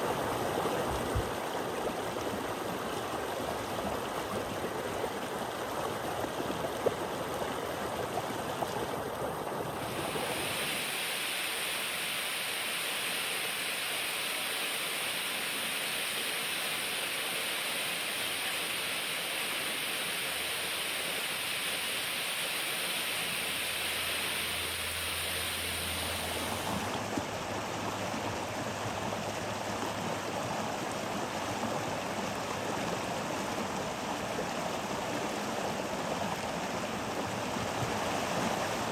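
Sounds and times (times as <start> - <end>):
running water rushing: 0.0 - 38.9.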